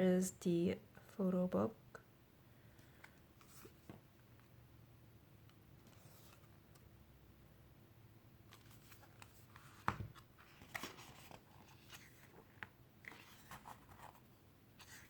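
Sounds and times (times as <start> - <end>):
paper rustling and tapping: 8.5 - 11.4.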